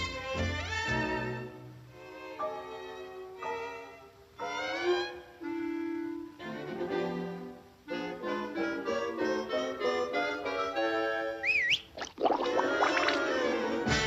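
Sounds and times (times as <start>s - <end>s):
orchestral cartoon music: 0.0s - 11.4s, 12.2s - 14.0s.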